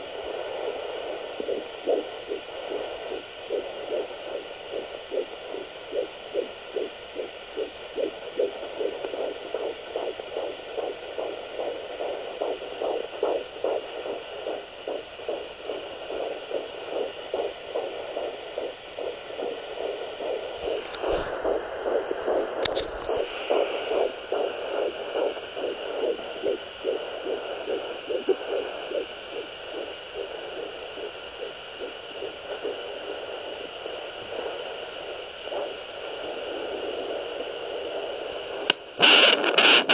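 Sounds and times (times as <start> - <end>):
faint electronic hum: 0.0 - 39.9
fetal heartbeat pulses: 0.0 - 39.9.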